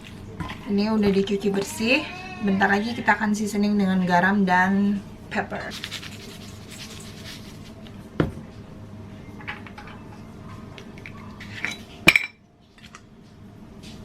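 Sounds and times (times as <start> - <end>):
dishes and utensils clinking: 9.4 - 10.3, 11.0 - 12.4.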